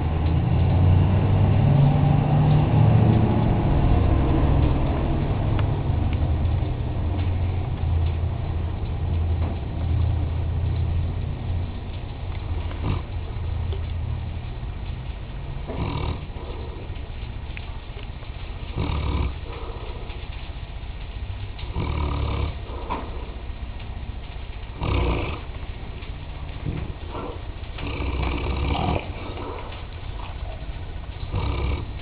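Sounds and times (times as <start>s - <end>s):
dog snoring: 12.7s - 13.2s, 15.7s - 16.9s, 18.7s - 20.1s, 21.6s - 23.3s, 24.8s - 25.5s, 27.1s - 30.6s, 31.3s - 32.0s.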